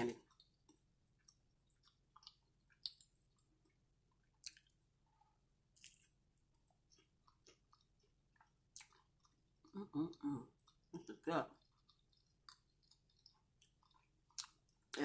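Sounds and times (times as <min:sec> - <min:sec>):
quiet chewing: 0:00.1 - 0:15.0
mouth clicks and smacks: 0:01.2 - 0:03.2, 0:04.2 - 0:04.8.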